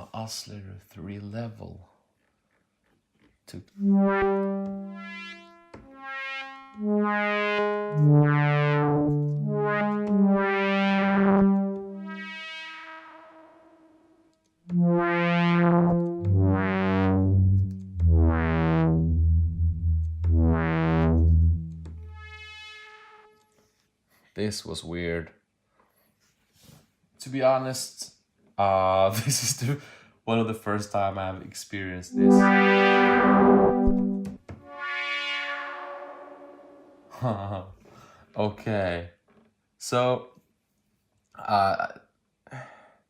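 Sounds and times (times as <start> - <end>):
deep bass notes: 3.7 - 5.3, 6.3 - 12.3, 14.7 - 22.5, 32.1 - 34.4
synth pad chords: 3.7 - 12.9, 14.7 - 22.6, 32.1 - 37.2.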